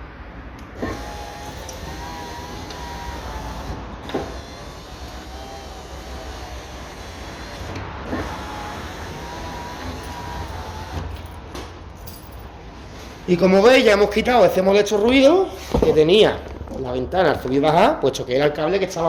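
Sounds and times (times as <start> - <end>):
power window motor whine: 0.8 - 11.4.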